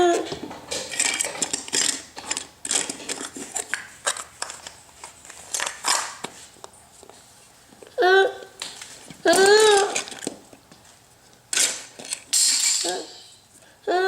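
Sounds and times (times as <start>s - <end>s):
plastic objects clattering: 0.0s - 6.4s, 8.6s - 10.5s.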